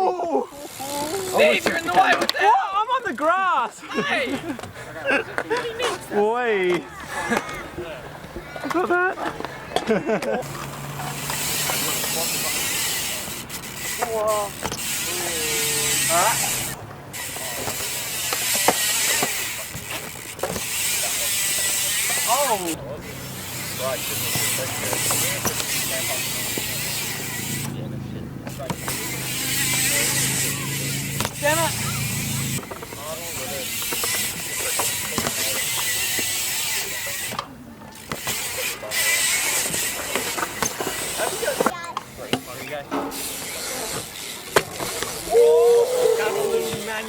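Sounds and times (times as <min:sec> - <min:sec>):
bike tyres rolling on concrete: 0:00.0 - 0:47.0
freewheel hub ticking: 0:10.4 - 0:36.9
sharp knocks from bike: 0:13.7 - 0:15.0, 0:17.3 - 0:21.0, 0:23.6 - 0:27.8, 0:28.4 - 0:36.4, 0:37.2 - 0:38.6, 0:39.4 - 0:45.2.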